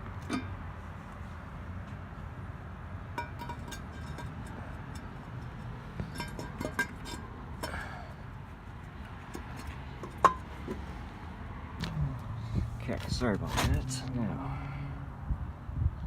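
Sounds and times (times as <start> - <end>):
metal clinks and taps: 3.2 - 7.8, 9.3 - 10.8.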